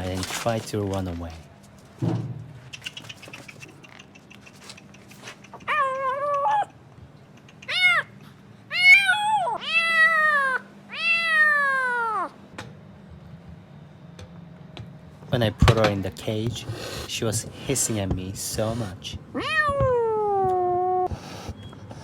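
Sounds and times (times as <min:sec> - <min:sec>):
kitten meowing loudly: 0:07.7 - 0:08.1, 0:08.7 - 0:12.3, 0:19.3 - 0:21.1.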